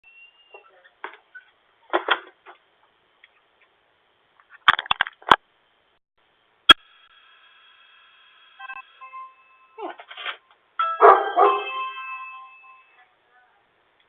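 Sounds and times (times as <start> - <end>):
electronic doorbell chime: 8.6 - 9.8, 10.8 - 13.1.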